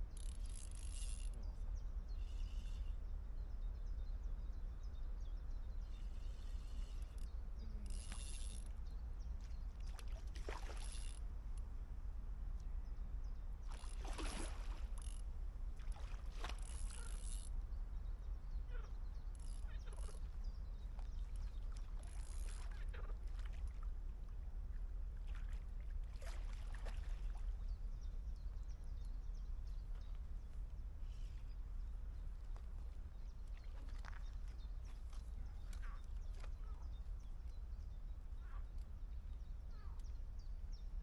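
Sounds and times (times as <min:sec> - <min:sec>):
water splashing and sloshing: 0:09.7 - 0:11.0, 0:13.6 - 0:15.1, 0:15.7 - 0:17.3, 0:21.0 - 0:27.7, 0:32.6 - 0:36.6.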